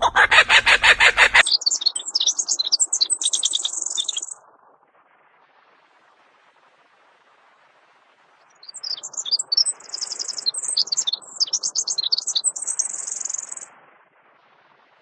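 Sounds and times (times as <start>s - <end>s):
songbird chirping and trilling: 0.0s - 4.4s, 8.6s - 13.7s.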